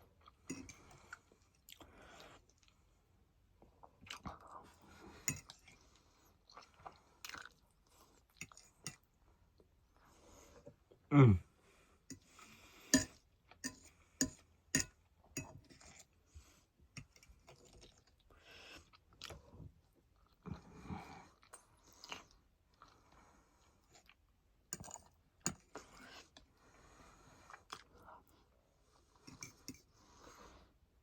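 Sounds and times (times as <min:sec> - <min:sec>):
person chewing food: 0:03.8 - 0:09.7, 0:12.1 - 0:26.6.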